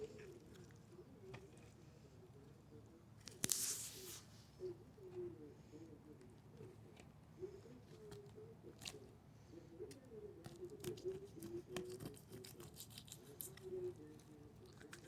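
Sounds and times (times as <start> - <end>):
small clicks and scrapes: 10.5 - 15.0.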